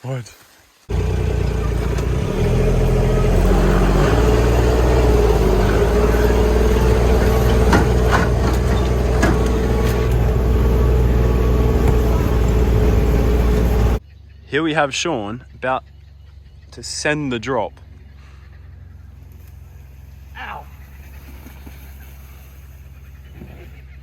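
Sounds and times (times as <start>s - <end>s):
utility vehicle engine running: 0.9s - 14.0s.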